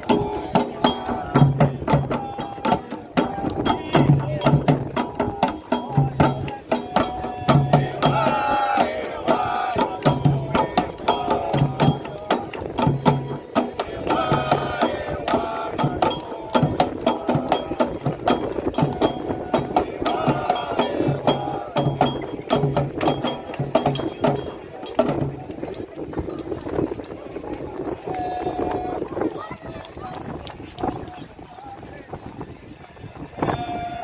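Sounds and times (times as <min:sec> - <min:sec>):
voices singing chant: 0:00.0 - 0:25.3
hand drums in fast rhythm: 0:00.0 - 0:28.0
bell strikes: 0:17.6 - 0:27.0.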